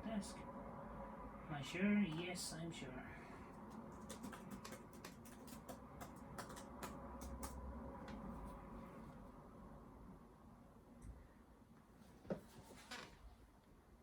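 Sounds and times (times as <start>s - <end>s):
typing on computer keyboard: 3.5s - 8.2s.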